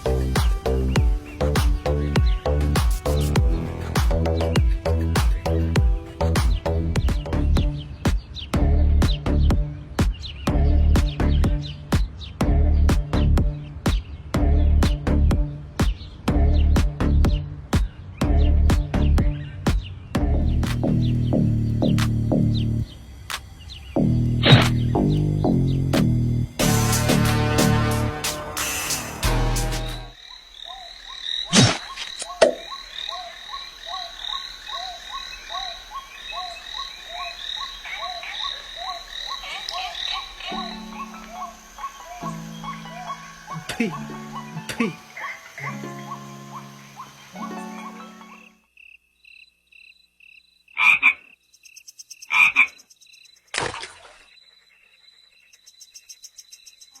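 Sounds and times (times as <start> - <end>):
frogs chirping: 30.1 - 57.0
frog double croaks: 30.2 - 55.6
animal calling: 30.3 - 48.6.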